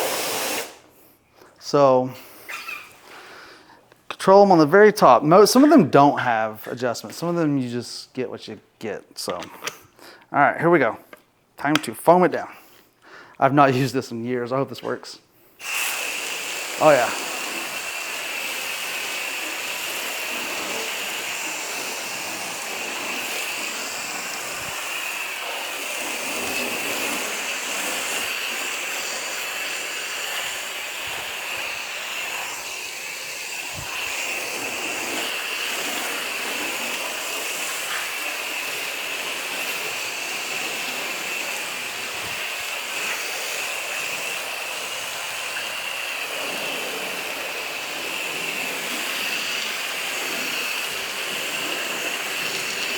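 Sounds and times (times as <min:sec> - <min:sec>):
foam gun spraying hiss: 0:00.0 - 0:01.0, 0:15.6 - 0:52.9.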